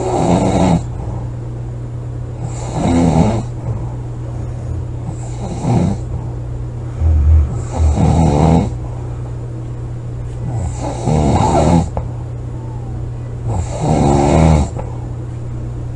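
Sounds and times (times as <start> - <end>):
person snoring loudly: 0.0 - 1.2, 2.4 - 3.9, 5.0 - 6.2, 6.9 - 8.8, 10.4 - 12.0, 13.5 - 14.8
steady low hum: 0.0 - 15.9.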